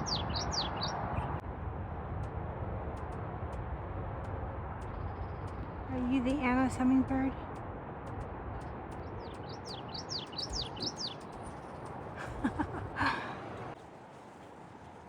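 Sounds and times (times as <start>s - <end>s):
bird singing falling notes: 0.0s - 1.3s, 8.6s - 12.0s
bird chirps: 0.0s - 1.4s, 8.6s - 11.9s
wind rumble on microphone: 0.0s - 15.0s.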